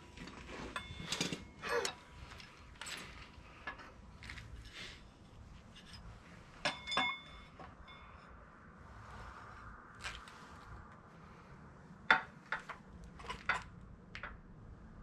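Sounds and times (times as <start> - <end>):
hand tools clinking on metal: 0.2 - 5.0, 5.8 - 8.2
ringing metal clinks: 0.7 - 2.2, 6.6 - 8.4.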